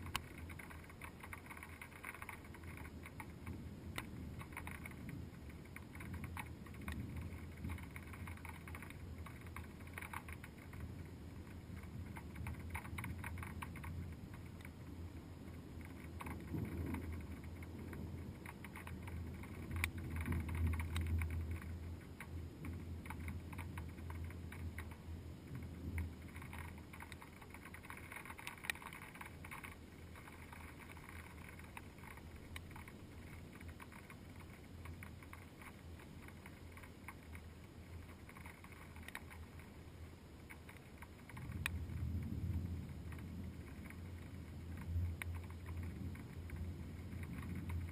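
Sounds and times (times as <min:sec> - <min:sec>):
muffled thunderstorm rumble: 0:00.0 - 0:28.0, 0:41.3 - 0:47.9
faint ticks: 0:00.0 - 0:47.9.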